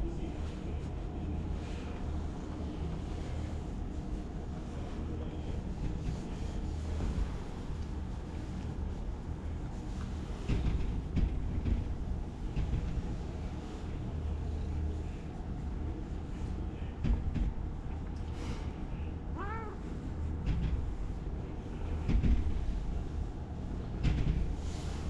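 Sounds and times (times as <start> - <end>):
steady low rumble: 0.0 - 25.0
cat meowing: 19.4 - 19.8.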